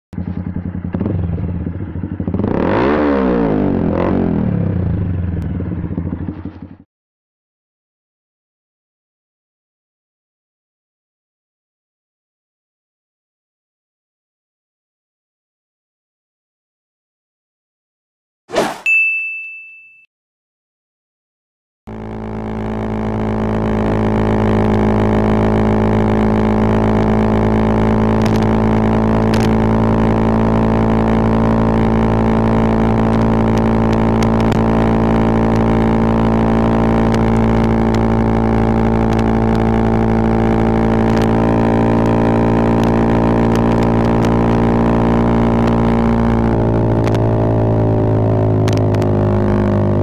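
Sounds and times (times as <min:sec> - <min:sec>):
motorcycle engine idling: 0:00.2 - 0:02.5, 0:04.8 - 0:06.8.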